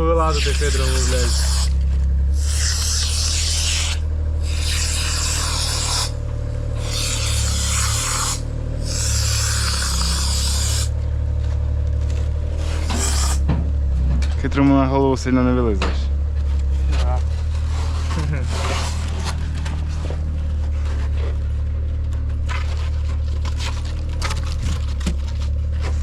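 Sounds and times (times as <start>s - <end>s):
steady low hum: 0.0s - 26.0s
long scraping strokes: 0.1s - 11.0s, 12.5s - 13.5s, 16.9s - 21.7s.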